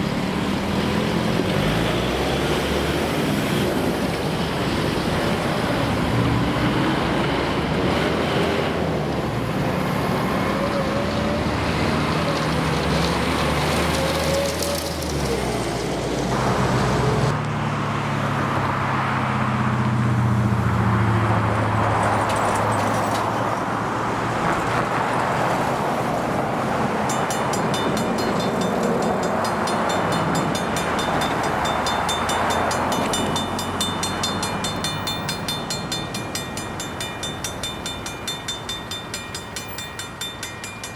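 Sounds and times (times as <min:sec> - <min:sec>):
heavy engine running: 0:25.6 - 0:40.9
level crossing bell ringing: 0:27.1 - 0:40.9.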